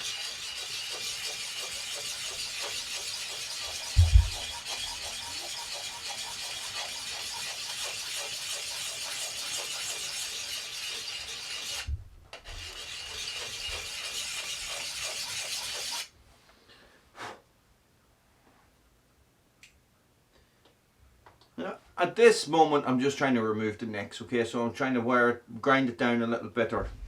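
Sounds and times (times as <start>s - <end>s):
sharpener rasping on axe edge: 0.0s - 11.9s, 12.6s - 16.1s.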